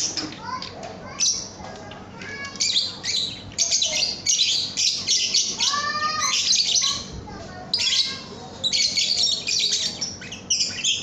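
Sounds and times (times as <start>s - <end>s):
lovebird chirping and trilling: 2.4s - 7.1s, 7.7s - 11.0s.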